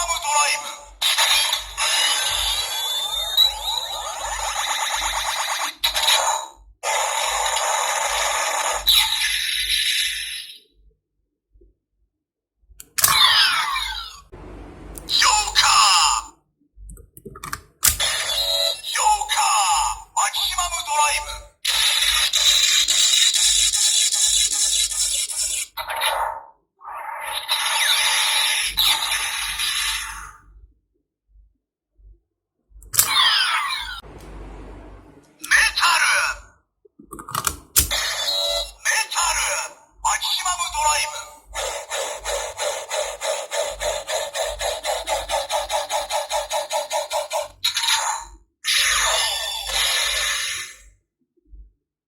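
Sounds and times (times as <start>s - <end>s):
toy electronic sound effects: 0.0s - 10.6s, 18.0s - 25.7s, 37.9s - 50.8s
tinny rushing noise effect: 14.4s - 15.1s, 34.0s - 35.4s
steady high tone: 14.4s - 15.6s, 34.0s - 35.5s
fast repeating pulse loop: 41.4s - 47.6s.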